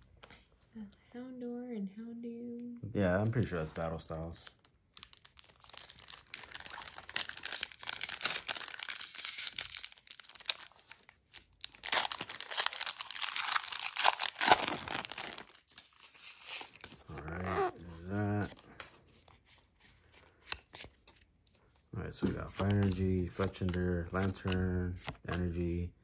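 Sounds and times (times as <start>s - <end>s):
wrapper crinkling and tearing: 3.5s - 17.7s.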